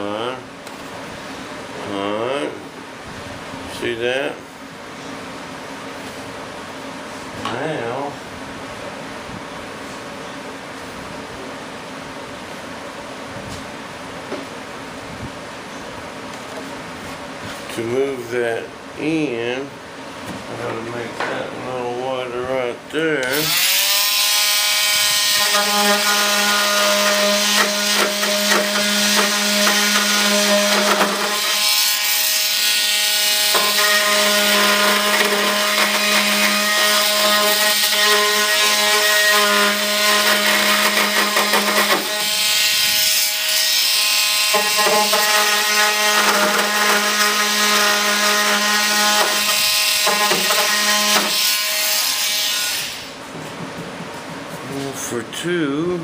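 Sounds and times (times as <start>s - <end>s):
handheld power tool grinding: 23.3s - 53.1s.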